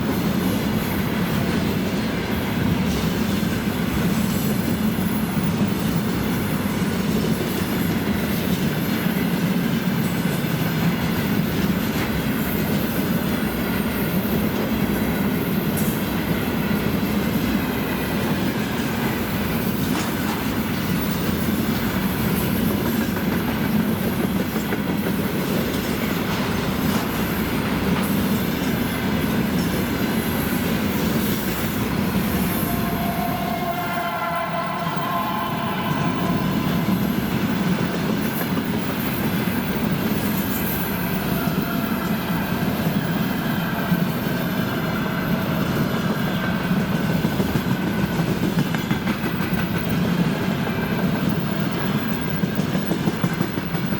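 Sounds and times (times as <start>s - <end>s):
freight train wheels on rails: 0.0s - 53.9s.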